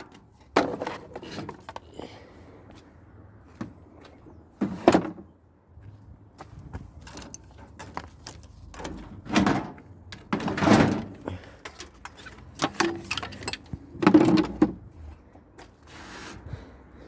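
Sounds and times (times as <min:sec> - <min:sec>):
metal parts knocking and clunking: 0:07.0 - 0:14.8.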